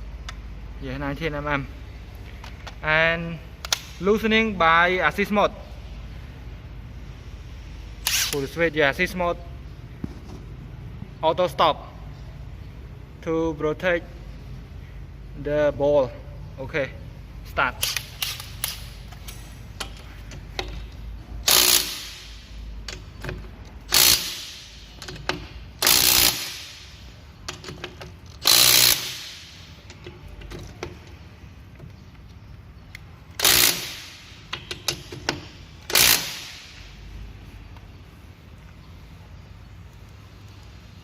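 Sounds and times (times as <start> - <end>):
impact wrench hammering: 19.8 - 31.1, 33.4 - 37.0.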